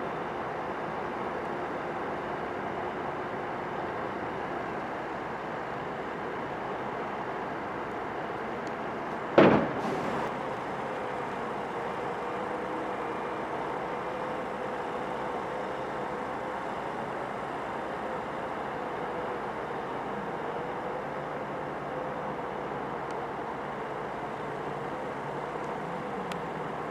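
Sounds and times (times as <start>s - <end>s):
bulldozer diesel engine under load: 0.0s - 26.9s
sharp loud bang: 9.4s - 10.3s.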